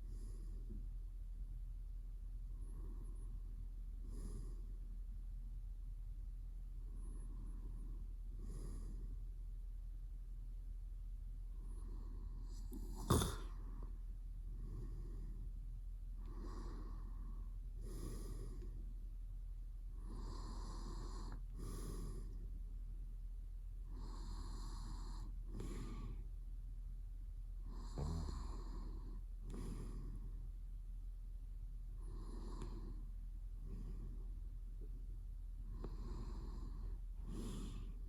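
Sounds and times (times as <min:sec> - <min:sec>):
man snoring softly: 0:00.0 - 0:00.8, 0:02.5 - 0:04.8, 0:06.8 - 0:09.3, 0:11.5 - 0:15.6, 0:16.2 - 0:19.0, 0:19.9 - 0:22.5, 0:23.8 - 0:26.3, 0:27.6 - 0:30.5, 0:31.9 - 0:34.4, 0:35.6 - 0:38.0.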